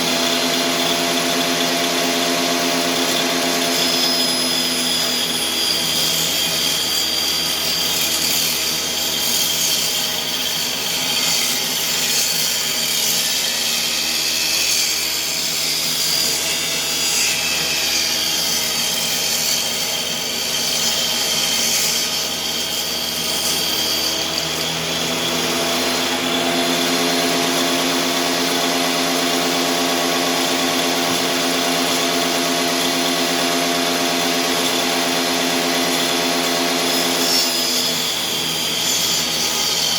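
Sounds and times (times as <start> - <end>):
power tool motor running: 0.0 - 39.9
saw cutting through wood: 0.0 - 39.9.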